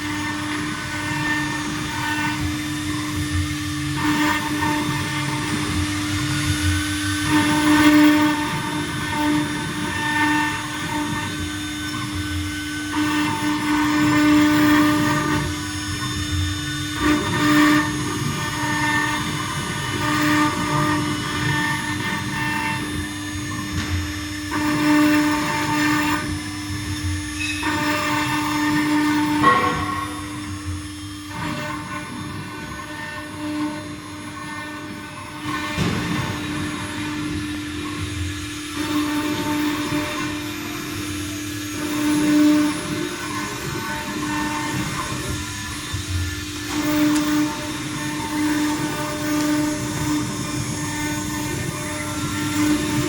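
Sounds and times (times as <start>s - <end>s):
router bit grinding stone: 0.0s - 53.0s
spindle motor whine: 0.0s - 53.0s
spindle whine: 25.4s - 31.7s.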